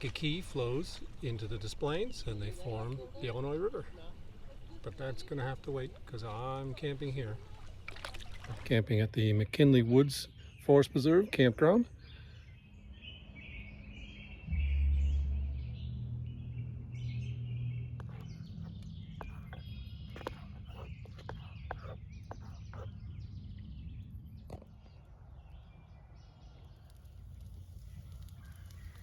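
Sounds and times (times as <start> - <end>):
birds chirping: 0.0 - 29.0
low rumble: 14.2 - 19.8.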